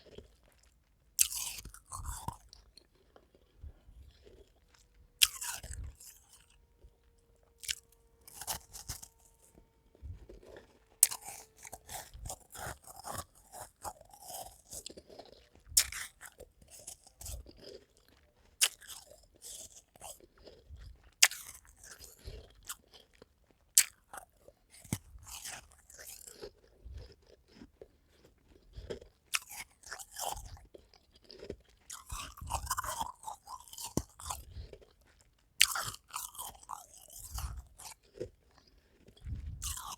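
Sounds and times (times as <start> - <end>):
person crunching ice: 0.0 - 6.6, 7.6 - 20.6, 29.0 - 34.9, 35.6 - 39.9.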